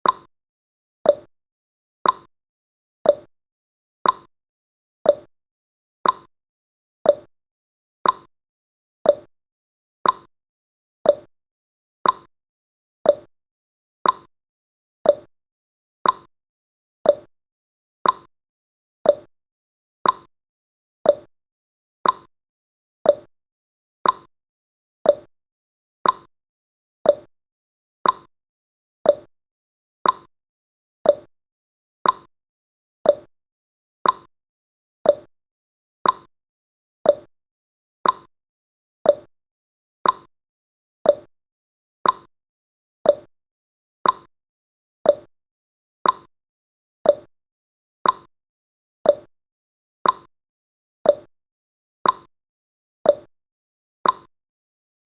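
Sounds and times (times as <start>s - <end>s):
clock ticking: 38.0s - 38.3s, 42.0s - 42.3s, 44.0s - 44.3s, 50.0s - 50.3s.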